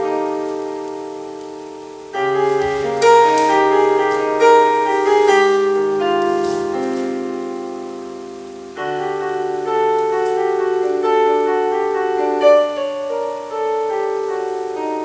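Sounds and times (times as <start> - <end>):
slow solo piano music: 0.0 - 15.0.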